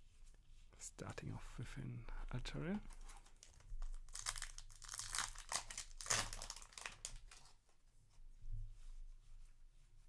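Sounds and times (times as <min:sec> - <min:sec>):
foil wrapper crinkling: 0:02.9 - 0:07.6.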